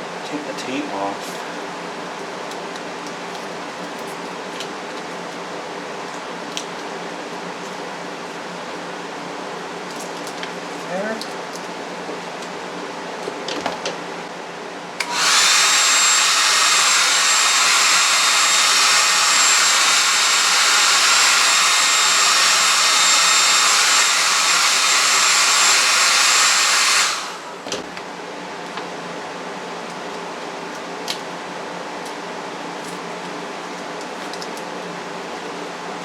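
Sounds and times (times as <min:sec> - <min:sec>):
hair dryer blowing: 0:15.0 - 0:27.8.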